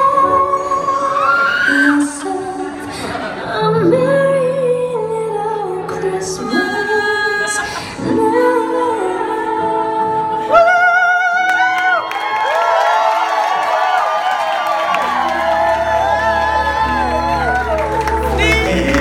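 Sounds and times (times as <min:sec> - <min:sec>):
woman singing pop vocals: 0:00.0 - 0:12.1, 0:16.2 - 0:19.0
backing music: 0:14.6 - 0:19.0.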